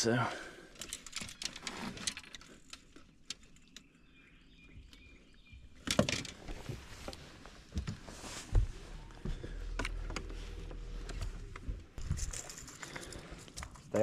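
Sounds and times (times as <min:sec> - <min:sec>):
fishing tackle clicks and knocks: 0:00.7 - 0:04.0, 0:05.8 - 0:06.5
faint bird chirps: 0:03.4 - 0:05.8.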